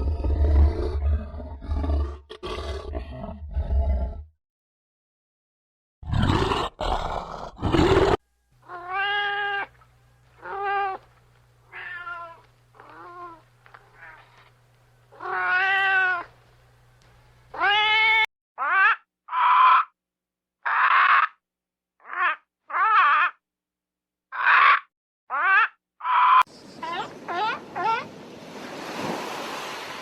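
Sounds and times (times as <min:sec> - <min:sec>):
low steady hum: 0:08.3 - 0:18.2
cat meowing: 0:08.6 - 0:09.7, 0:10.4 - 0:11.0, 0:11.7 - 0:14.4, 0:15.2 - 0:16.3, 0:17.5 - 0:19.8, 0:22.0 - 0:23.3, 0:25.3 - 0:28.0.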